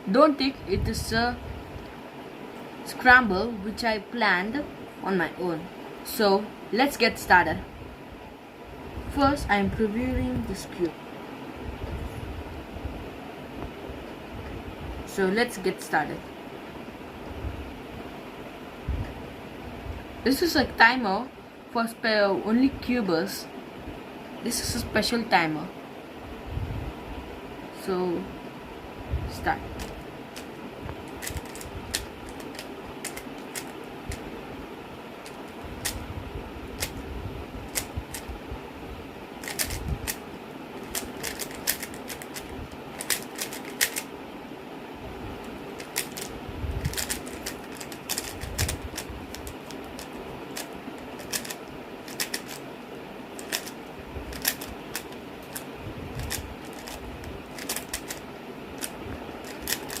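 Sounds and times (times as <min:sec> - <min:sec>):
plastic puzzle cube clicking: 0:29.8 - 0:30.5, 0:31.2 - 0:34.2, 0:35.2 - 0:36.0, 0:36.8 - 0:37.0, 0:37.7 - 0:38.3, 0:39.4 - 0:40.2, 0:40.8 - 0:44.1, 0:45.8 - 0:52.6, 0:53.4 - 0:55.6, 0:56.2 - 0:58.2, 0:58.8 - 1:00.0.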